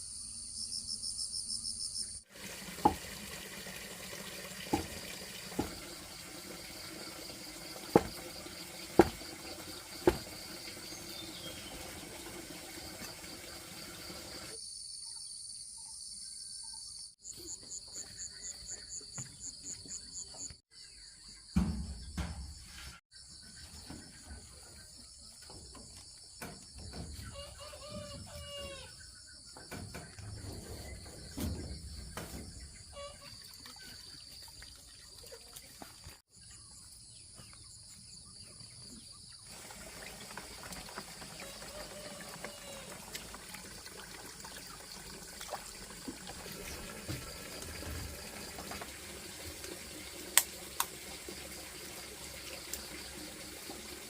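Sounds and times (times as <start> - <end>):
insects chirping: 0.0 - 2.2, 4.7 - 11.7.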